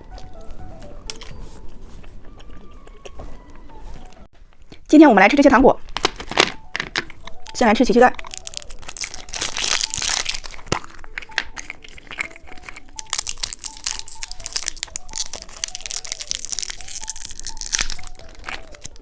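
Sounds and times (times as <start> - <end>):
plastic wrapping crinkling and tearing: 5.8 - 19.0.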